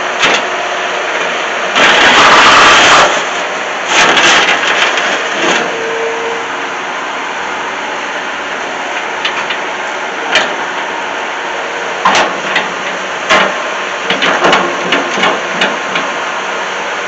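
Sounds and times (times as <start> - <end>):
skid steer running: 0.0 - 17.0
sharp knocks and clanks: 10.3 - 10.8, 12.0 - 16.1.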